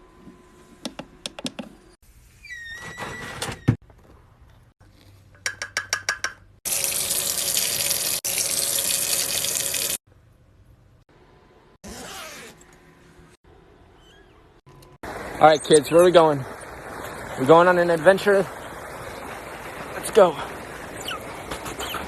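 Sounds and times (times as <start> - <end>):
water running hard: 15.0 - 21.5.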